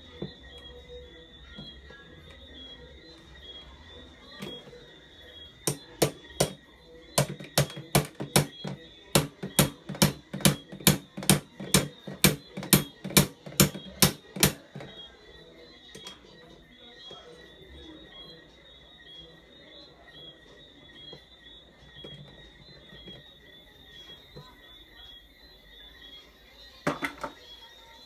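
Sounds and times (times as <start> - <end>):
sharp knocks: 5.7 - 6.6, 7.2 - 14.9.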